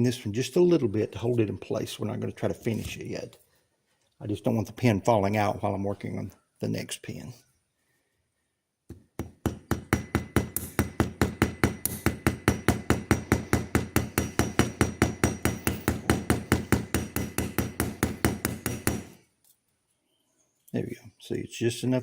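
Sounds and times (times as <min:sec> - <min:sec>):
small hammer tapping metal pin: 0:08.9 - 0:19.2.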